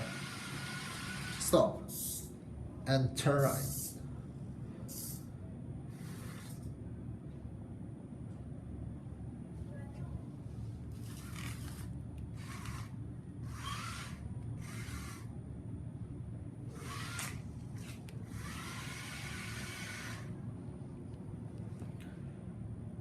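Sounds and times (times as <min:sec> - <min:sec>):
small gear motors whirring: 0:00.0 - 0:01.6, 0:05.9 - 0:06.7, 0:10.9 - 0:15.3, 0:16.7 - 0:20.4.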